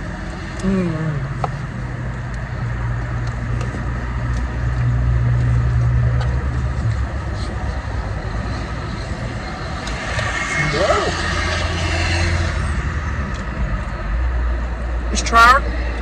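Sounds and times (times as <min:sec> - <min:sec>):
car engine idling: 0:00.0 - 0:11.7.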